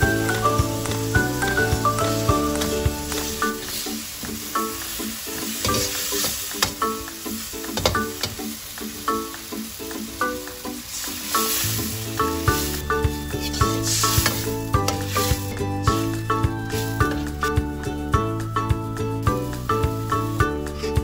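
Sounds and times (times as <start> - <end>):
food sizzling in oil: 0.0 - 21.0
light background music: 0.0 - 21.0
utensil scraping a pan: 12.5 - 16.1.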